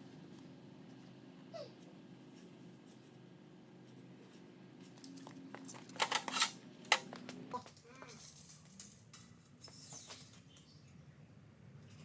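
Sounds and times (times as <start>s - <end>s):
sharp clicks and rattles: 5.0s - 7.4s.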